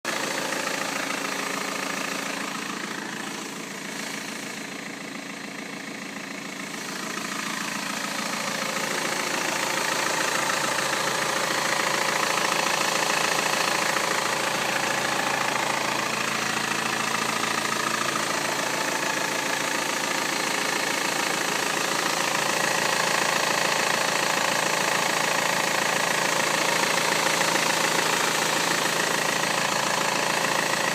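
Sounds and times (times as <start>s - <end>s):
diesel engine idling: 0.0s - 30.9s.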